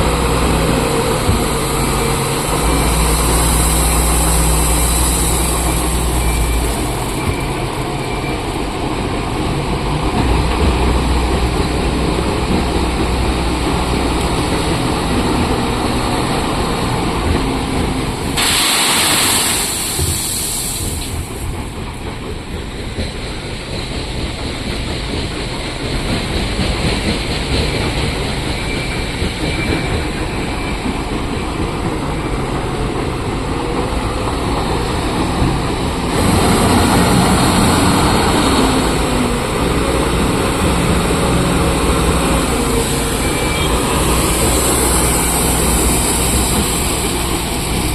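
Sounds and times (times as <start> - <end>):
heavy diesel machinery running: 0.0 - 47.9
loud burst of hiss: 0.3 - 8.1, 18.2 - 21.6, 42.2 - 47.9.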